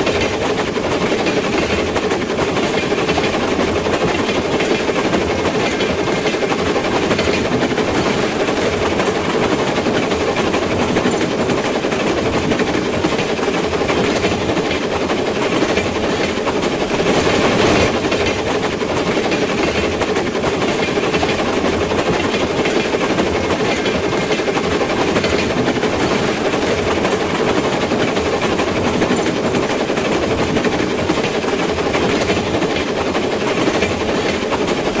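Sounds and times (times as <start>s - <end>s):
train rumbling on rails: 0.0s - 35.0s.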